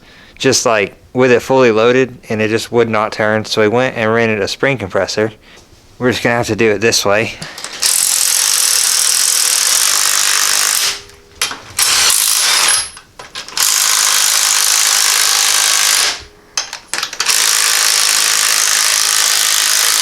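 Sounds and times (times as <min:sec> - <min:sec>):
impact wrench running: 0:07.6 - 0:20.0.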